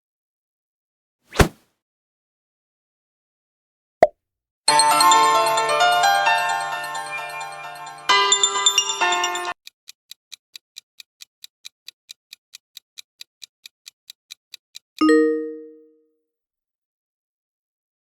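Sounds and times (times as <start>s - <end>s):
phone notification tone: 15.0s - 16.0s.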